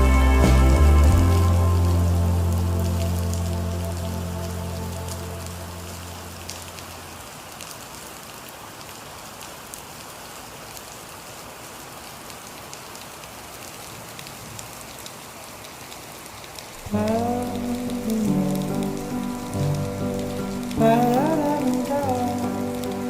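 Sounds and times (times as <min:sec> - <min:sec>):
song playing: 0:00.0 - 0:06.4, 0:16.8 - 0:23.0
rain falling: 0:00.0 - 0:23.0.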